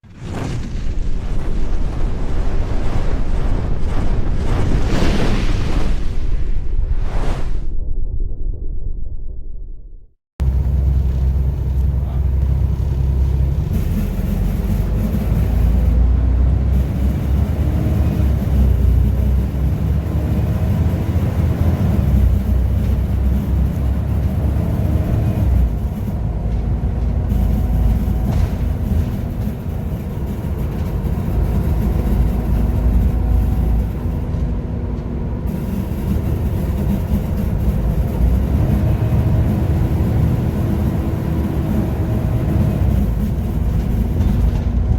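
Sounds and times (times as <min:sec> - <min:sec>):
diesel bus engine rumbling: 0:10.4 - 0:44.9.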